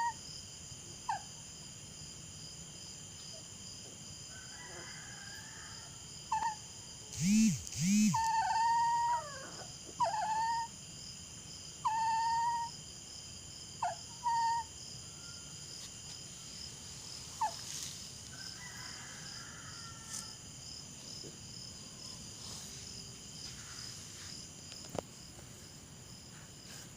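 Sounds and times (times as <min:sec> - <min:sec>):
night insects shrilling: 0:04.3 - 0:26.9
dog whining: 0:07.2 - 0:10.7, 0:11.8 - 0:12.7, 0:13.8 - 0:14.7.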